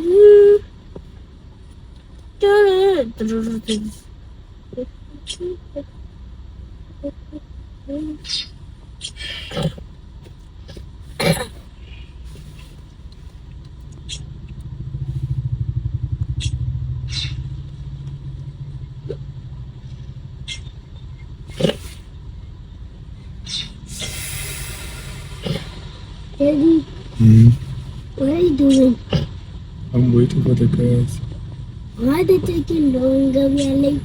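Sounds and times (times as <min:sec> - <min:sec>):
car engine rumble: 0:00.0 - 0:34.0
passing vehicle engine: 0:11.8 - 0:34.0.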